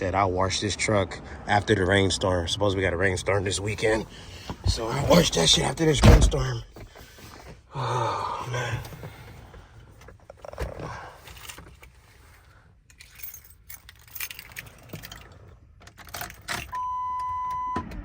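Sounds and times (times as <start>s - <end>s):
keys jangling: 12.9s - 16.8s.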